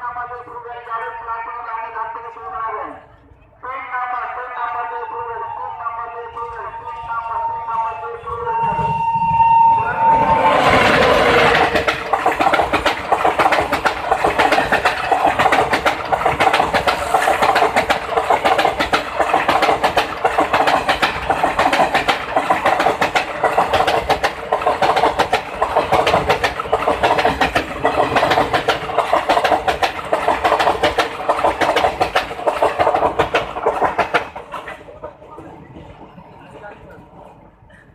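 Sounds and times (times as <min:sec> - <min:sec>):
train hum: 0:00.0 - 0:37.9
train wheels clattering: 0:10.3 - 0:36.0.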